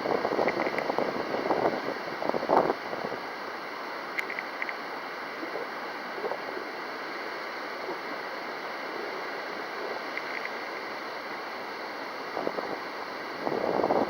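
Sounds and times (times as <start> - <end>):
wind on microphone: 0.0 - 3.2, 12.3 - 14.0.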